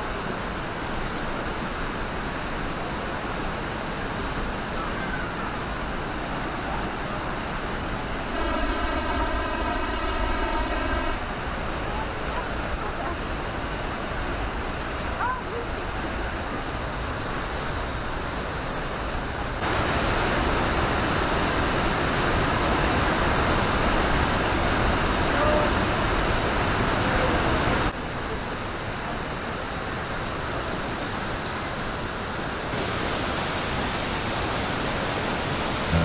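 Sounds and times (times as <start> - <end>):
waterfall rushing: 0.1 - 15.2, 19.6 - 27.9, 32.6 - 36.0.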